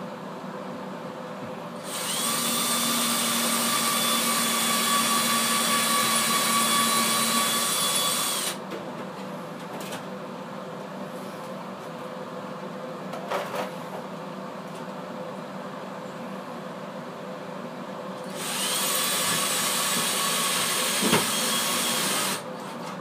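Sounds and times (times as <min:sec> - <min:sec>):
electric power drill spinning: 0:01.8 - 0:08.6, 0:18.2 - 0:22.4.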